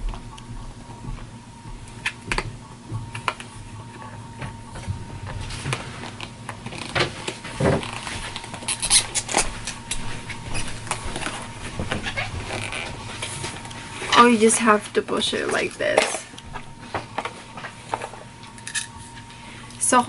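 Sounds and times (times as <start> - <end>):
plastic packaging clicks and scrapes: 5.5 - 13.6.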